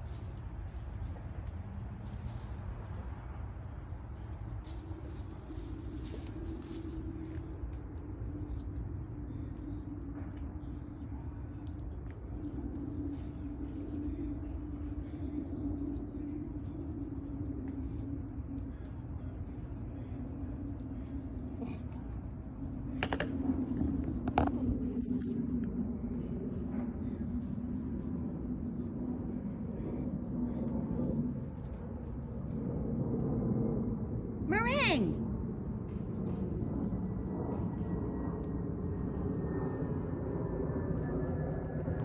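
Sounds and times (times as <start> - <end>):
steady low hum: 0.0 - 42.0.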